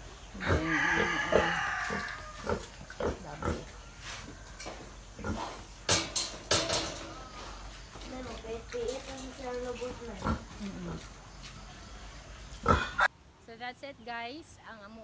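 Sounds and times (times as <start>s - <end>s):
pigs grunting: 0.0s - 6.1s, 6.9s - 13.1s
high-pitched pig call: 0.4s - 2.7s.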